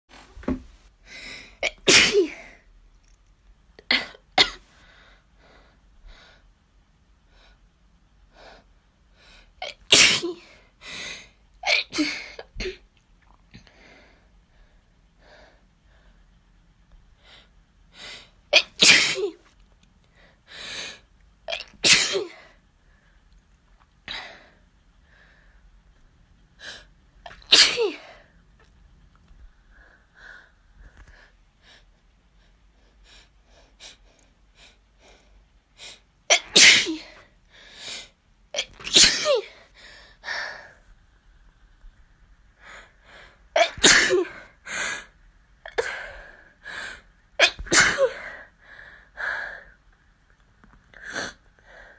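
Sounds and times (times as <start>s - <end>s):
person sneezing: 1.6s - 2.5s, 9.6s - 10.5s, 18.6s - 19.5s, 21.5s - 22.4s, 27.3s - 28.2s, 36.3s - 37.2s, 38.6s - 39.6s, 43.6s - 44.5s, 47.4s - 48.4s.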